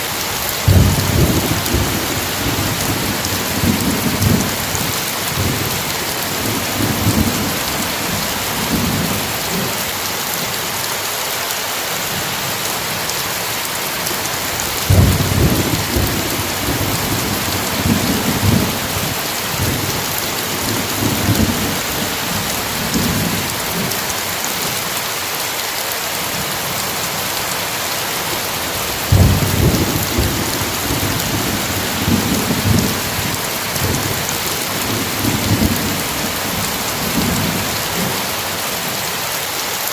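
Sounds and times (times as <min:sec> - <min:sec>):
heavy rain: 0:00.0 - 0:39.9
rolling thunder: 0:00.6 - 0:09.7, 0:14.6 - 0:23.9, 0:28.8 - 0:38.2.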